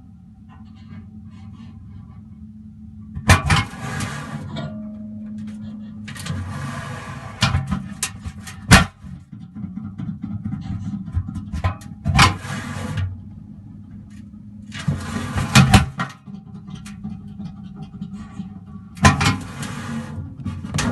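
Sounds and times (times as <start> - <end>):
machinery humming: 0.0 - 9.4.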